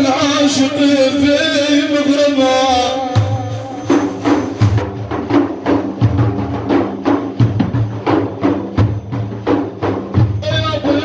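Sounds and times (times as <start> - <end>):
drums playing steady rhythm: 2.4 - 11.0.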